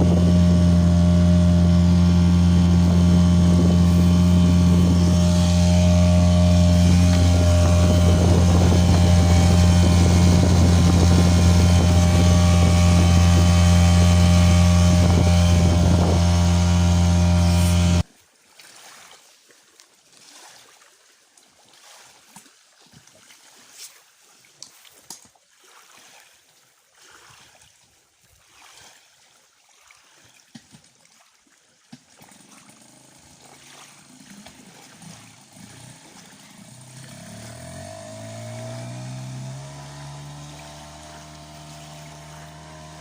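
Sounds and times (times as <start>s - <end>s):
outboard motor: 0.0s - 19.1s, 20.1s - 43.0s
water trickling and lapping: 0.0s - 43.0s
small knocks and splashes: 18.4s - 38.1s.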